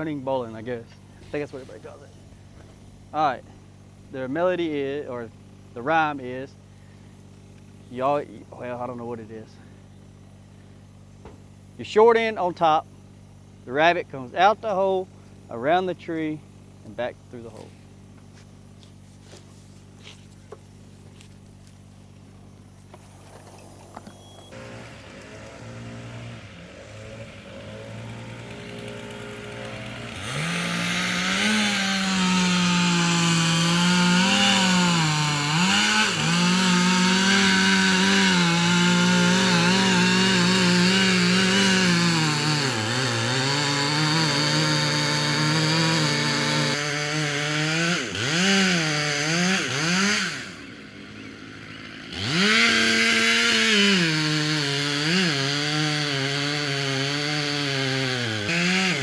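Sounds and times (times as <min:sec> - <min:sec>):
chainsaw revving: 0:00.0 - 0:05.9, 0:22.6 - 0:59.0.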